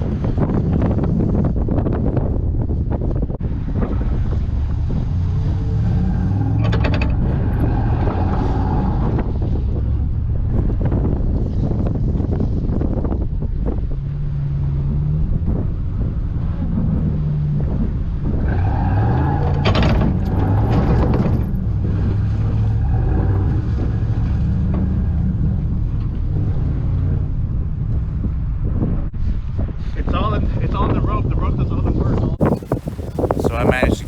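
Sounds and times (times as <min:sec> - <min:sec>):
truck engine revving: 0:03.9 - 0:09.9, 0:14.4 - 0:27.8
wheels spinning: 0:32.4 - 0:34.0.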